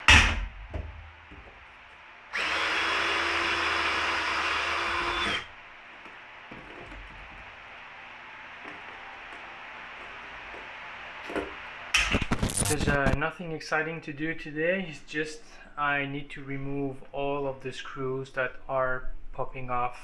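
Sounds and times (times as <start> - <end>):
power drill running: 2.3 - 7.5.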